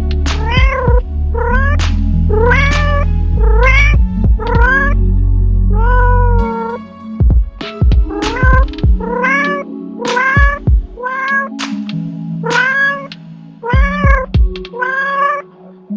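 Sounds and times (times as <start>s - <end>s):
background music with thumping beat: 0.0s - 5.0s, 7.2s - 9.4s, 10.0s - 14.8s
cat meowing: 0.4s - 5.0s, 5.7s - 6.8s, 8.1s - 11.5s, 12.4s - 15.4s.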